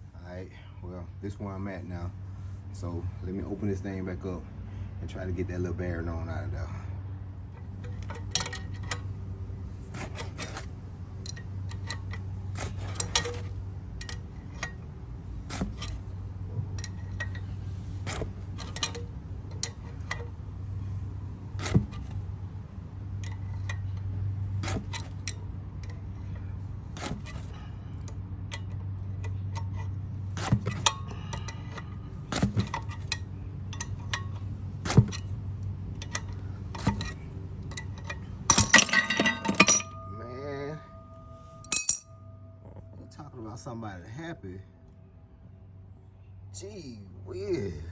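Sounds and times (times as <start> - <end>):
low steady hum: 0.0 - 47.9
hand tools clicking on metal: 36.0 - 40.2, 41.6 - 42.1.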